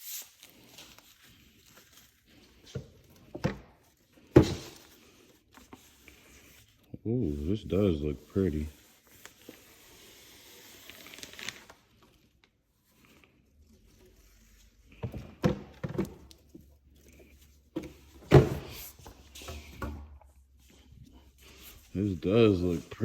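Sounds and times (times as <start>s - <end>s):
package rustling: 10.6s - 13.1s.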